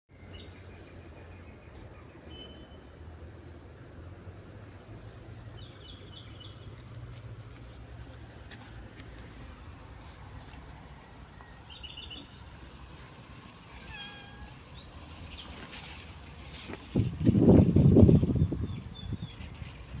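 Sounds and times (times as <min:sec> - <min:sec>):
birds chirping: 0:04.5 - 0:06.9, 0:11.3 - 0:12.9.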